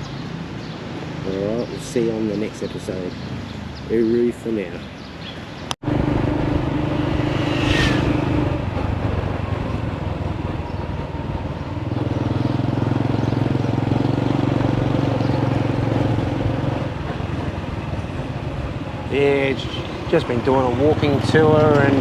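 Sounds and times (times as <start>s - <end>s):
road and wind noise: 0.0s - 22.0s
motorcycle engine running: 5.9s - 7.5s, 8.2s - 18.8s.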